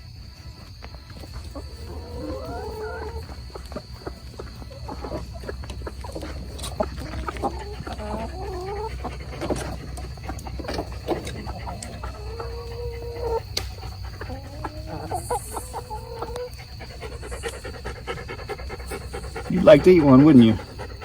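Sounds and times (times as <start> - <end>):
hens clucking: 0.1 - 21.0
steady low hum: 15.9 - 21.0.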